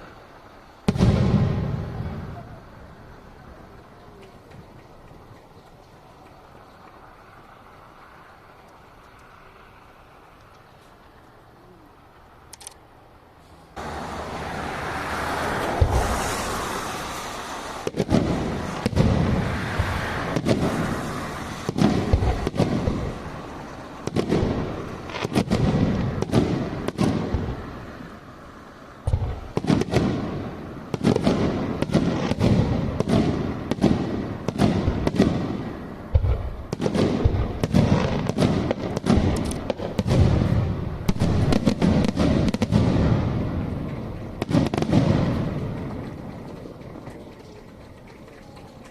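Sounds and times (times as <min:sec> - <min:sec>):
fireworks crackle: 0:00.0 - 0:11.4, 0:13.8 - 0:48.9
fireworks booming: 0:00.8 - 0:05.3, 0:15.3 - 0:28.2, 0:29.0 - 0:47.3.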